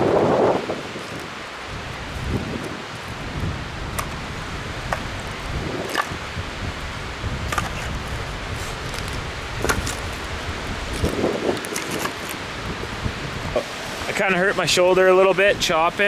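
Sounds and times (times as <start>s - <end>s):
wind rushing: 0.0s - 11.7s.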